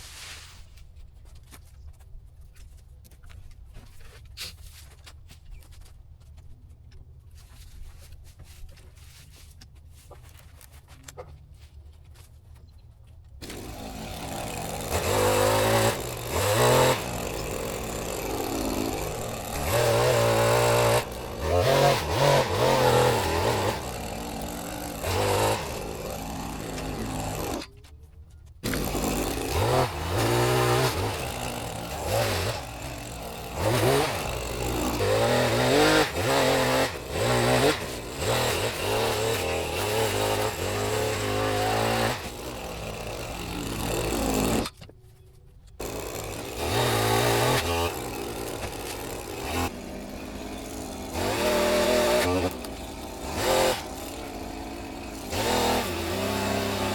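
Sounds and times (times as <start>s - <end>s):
gas-powered saw revving: 13.4s - 27.7s, 28.6s - 44.7s, 45.8s - 56.9s.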